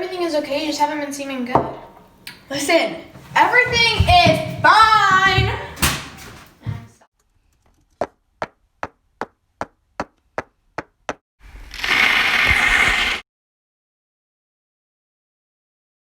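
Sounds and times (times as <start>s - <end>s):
burst of hissing noise: 11.5s - 13.2s.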